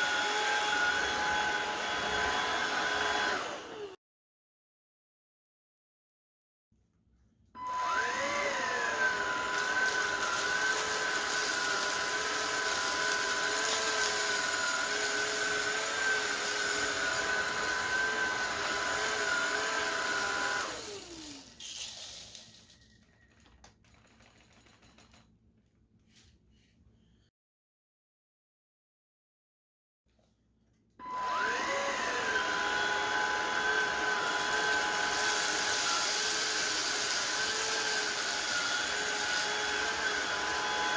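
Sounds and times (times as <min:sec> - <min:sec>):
stick vacuum motor whining: 0:00.0 - 0:04.0, 0:07.6 - 0:23.5, 0:31.0 - 0:40.9.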